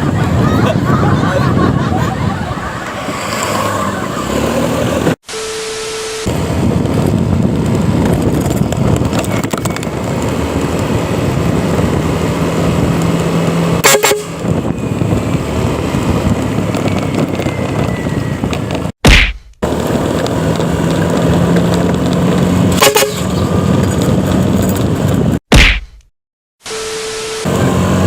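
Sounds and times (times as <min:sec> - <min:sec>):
vehicle running on road: 0:00.0 - 0:19.0, 0:19.6 - 0:25.4, 0:27.0 - 0:28.0
low truck horn blast: 0:04.2 - 0:06.8, 0:13.7 - 0:15.2, 0:22.7 - 0:23.5.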